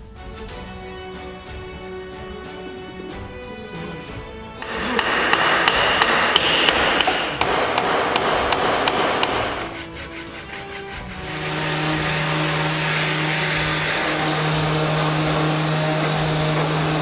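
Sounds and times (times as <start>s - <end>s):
background music: 0.0s - 17.0s
sharp knocks: 4.6s - 9.9s.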